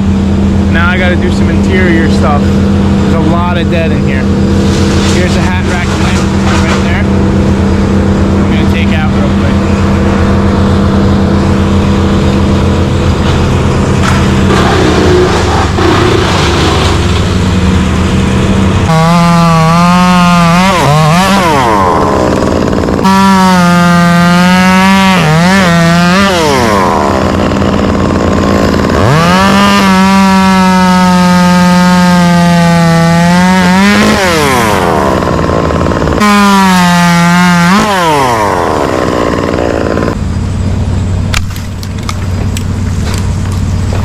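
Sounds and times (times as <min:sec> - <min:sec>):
chainsaw cutting wood: 0:00.0 - 0:40.2, 0:41.3 - 0:44.0
wood cracking: 0:04.5 - 0:07.1, 0:13.0 - 0:40.2, 0:41.3 - 0:44.0.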